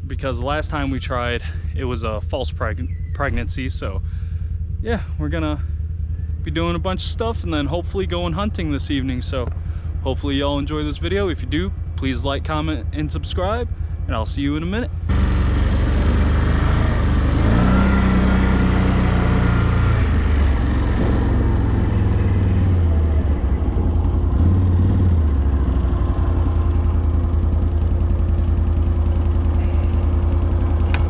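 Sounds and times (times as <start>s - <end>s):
vehicle engine revving: 14.9s - 31.0s.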